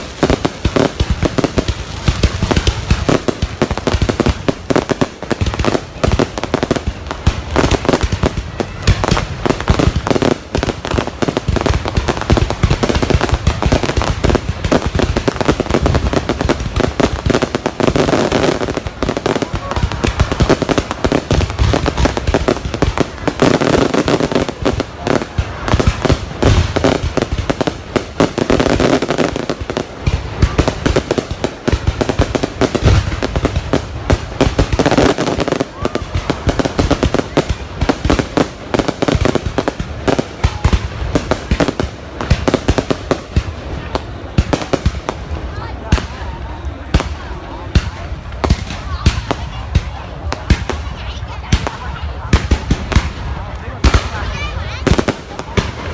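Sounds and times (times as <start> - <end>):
fireworks bangs and crackles: 0.0 - 55.9.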